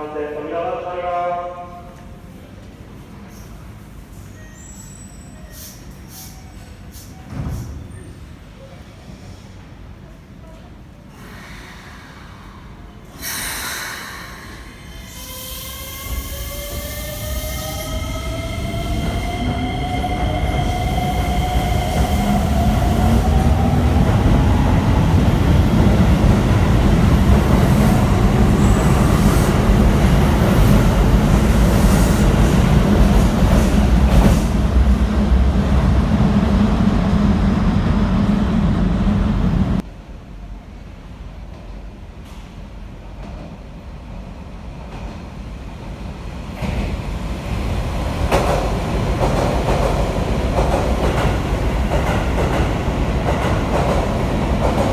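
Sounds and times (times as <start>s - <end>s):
brief air hiss: 4.7s - 7.7s, 11.1s - 15.9s
wheels rumbling on rail: 16.8s - 39.8s, 46.6s - 54.9s.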